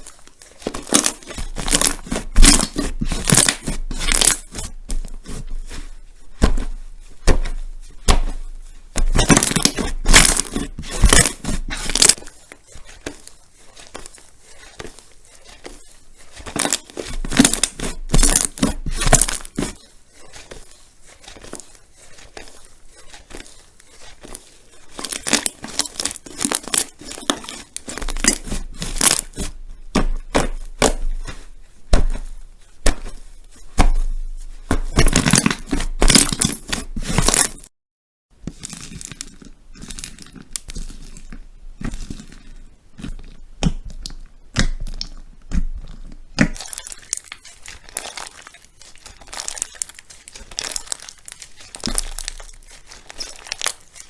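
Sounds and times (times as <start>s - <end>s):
crunchy slime crackling and popping: 0.0s - 37.7s, 38.4s - 54.0s.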